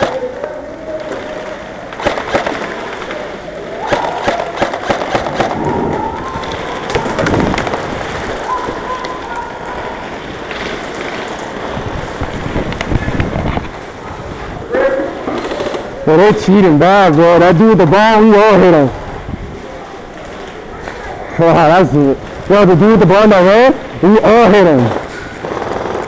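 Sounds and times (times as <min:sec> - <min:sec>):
airsoft guns firing: 0:00.0 - 0:00.4, 0:01.1 - 0:03.2, 0:03.8 - 0:08.4, 0:15.3 - 0:16.0, 0:24.8 - 0:26.0.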